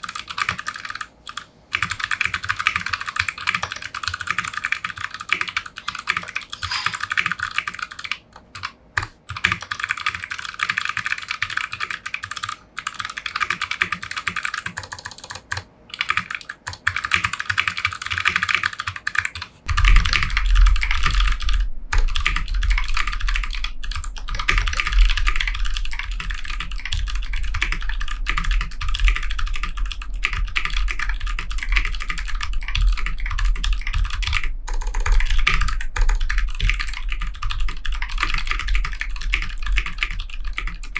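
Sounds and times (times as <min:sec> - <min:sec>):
mechanical keyboard typing: 0:00.0 - 0:40.9
steady low rumble: 0:19.7 - 0:40.9.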